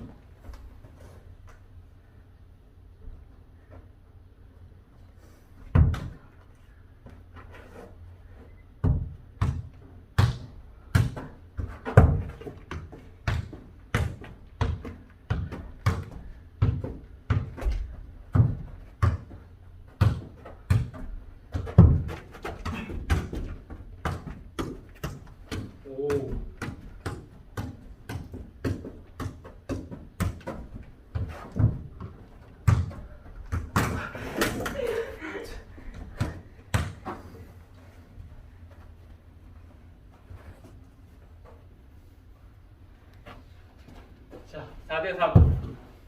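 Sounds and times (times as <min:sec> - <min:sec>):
football thudding on indoor floor: 0:05.6 - 0:06.3, 0:08.8 - 0:34.9, 0:35.9 - 0:37.5, 0:45.3 - 0:45.9.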